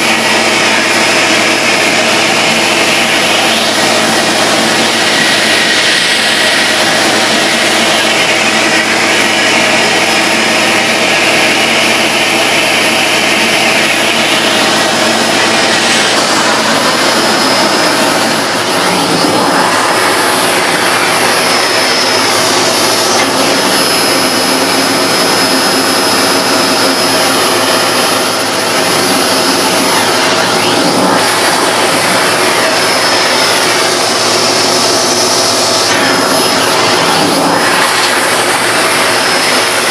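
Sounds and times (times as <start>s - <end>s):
vacuum cleaner motor screaming: 0.0s - 39.9s.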